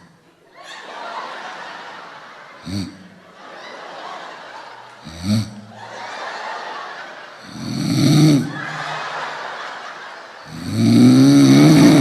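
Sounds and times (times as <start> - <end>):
dog snoring with snorts: 5.1 - 5.6, 7.5 - 8.5, 10.5 - 12.0.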